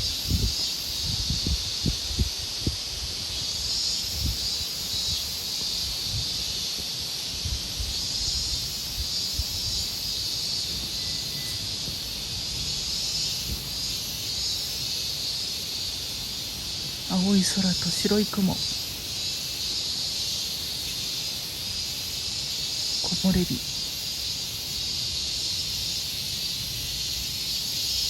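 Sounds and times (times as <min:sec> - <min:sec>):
wind gusting on microphone: 0:00.0 - 0:13.9
high-pitched insect chorus: 0:00.0 - 0:28.0.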